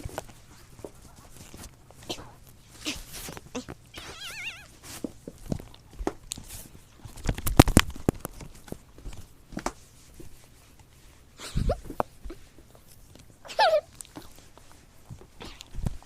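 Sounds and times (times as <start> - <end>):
kitten warbling cry: 3.9 - 4.7.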